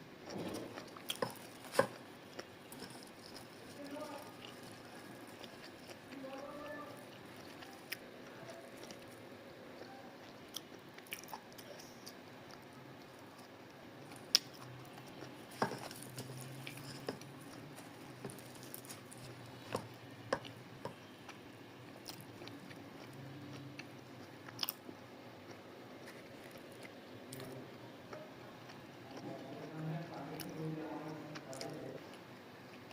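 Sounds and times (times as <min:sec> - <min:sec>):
person chewing and biting: 0:00.3 - 0:06.2, 0:14.0 - 0:21.3, 0:22.0 - 0:24.9.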